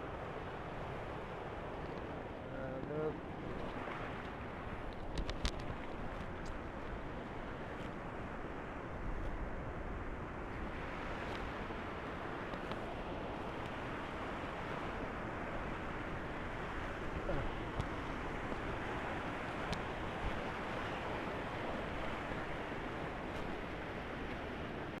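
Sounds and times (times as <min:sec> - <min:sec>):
surf washing on a beach: 0:00.0 - 0:25.0
wind on the microphone: 0:00.0 - 0:25.0
faint clicks: 0:04.8 - 0:06.6.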